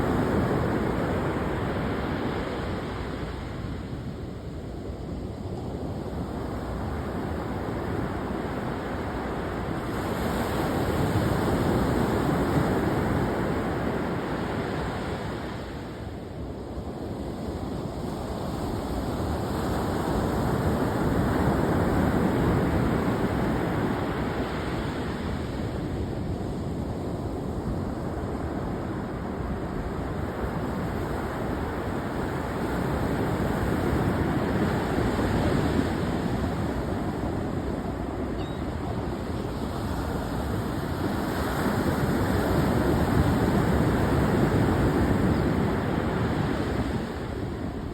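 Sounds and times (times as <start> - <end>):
ocean surf waves: 28.9 - 47.9.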